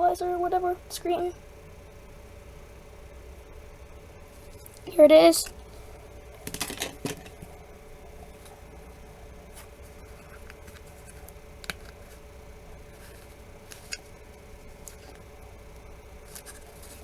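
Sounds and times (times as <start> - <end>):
faint steady hum: 0.0 - 17.0
small parts clicks and rustles: 6.4 - 7.6, 10.3 - 12.2, 13.0 - 14.1.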